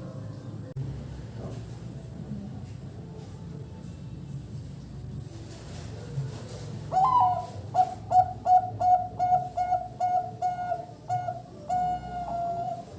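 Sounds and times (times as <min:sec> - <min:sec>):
dove cooing: 0:06.5 - 0:12.9.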